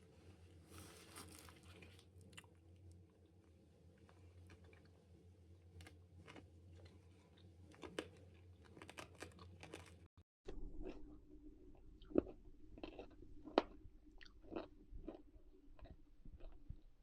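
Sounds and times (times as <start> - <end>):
low room hum: 0.0 - 17.0
person crunching hard candy: 12.0 - 16.8.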